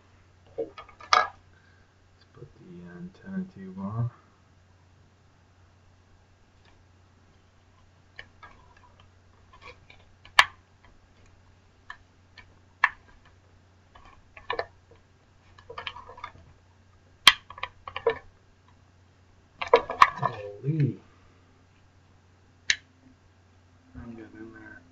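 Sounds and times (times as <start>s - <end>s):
clicks of plastic parts: 14.0s - 16.5s, 17.3s - 18.8s.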